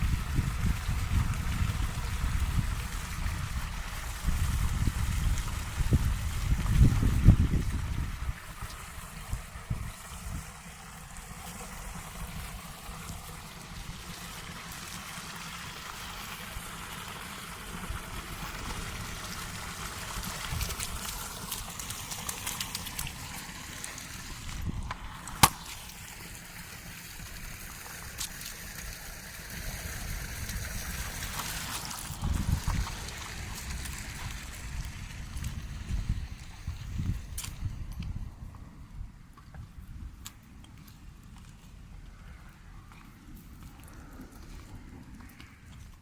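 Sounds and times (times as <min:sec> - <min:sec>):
wind rumble on microphone: 0:00.0 - 0:10.8, 0:17.8 - 0:23.6, 0:24.3 - 0:25.3, 0:29.3 - 0:41.1, 0:41.7 - 0:46.0
water running and trickling: 0:00.0 - 0:38.2
water sloshing: 0:03.0 - 0:37.6.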